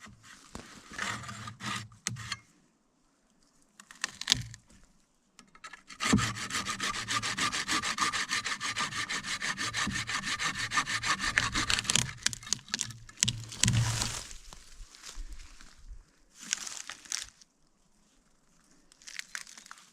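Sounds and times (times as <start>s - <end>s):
tool scraping wood: 0.2s - 2.4s, 5.8s - 14.2s
hand tool rasping wood: 0.9s - 2.3s, 5.9s - 14.1s.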